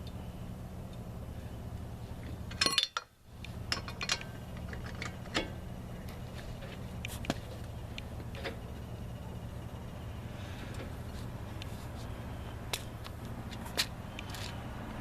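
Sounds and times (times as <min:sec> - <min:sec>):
steady low hum: 0:00.0 - 0:15.0
lug wrench clinking on nuts: 0:02.3 - 0:05.6.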